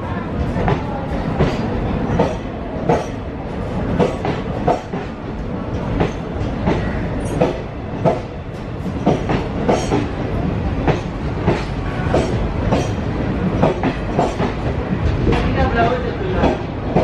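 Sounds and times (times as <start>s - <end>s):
train wheels clacking on rails: 0.3s - 17.0s.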